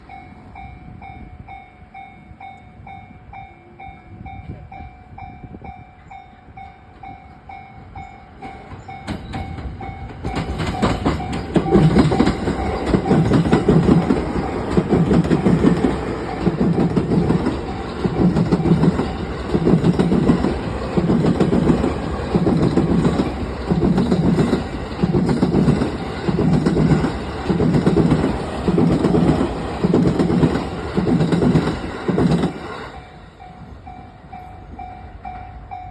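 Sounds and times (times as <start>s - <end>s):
level-crossing bell ringing: 0.0s - 19.4s
train wheels clickety-clack: 8.0s - 33.8s.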